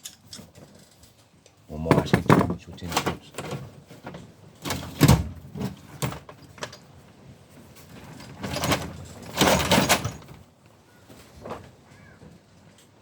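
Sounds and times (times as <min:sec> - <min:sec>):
tools and hardware clattering: 0:01.8 - 0:10.5.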